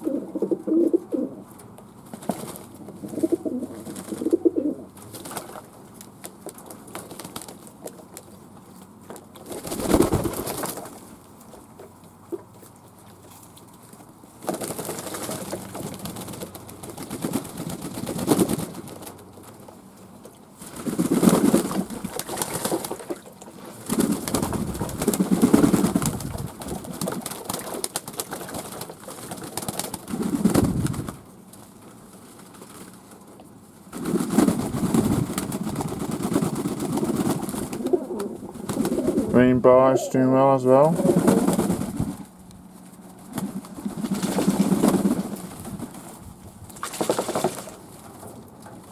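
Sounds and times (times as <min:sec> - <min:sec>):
doves cooing: 0:00.0 - 0:01.5, 0:02.8 - 0:05.1, 0:34.1 - 0:42.4.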